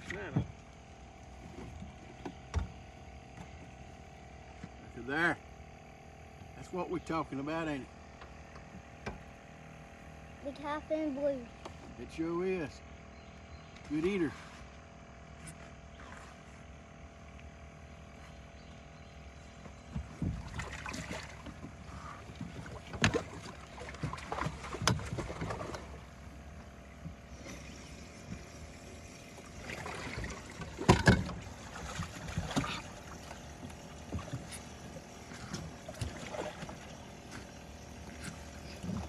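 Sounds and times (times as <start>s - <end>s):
faint steady hum: 0.0s - 39.0s
water splashing: 20.3s - 26.2s, 27.4s - 39.0s.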